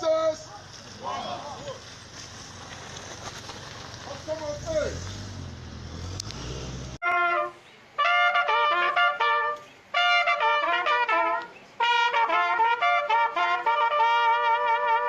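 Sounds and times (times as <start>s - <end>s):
trumpet playing a tune: 7.0s - 15.0s.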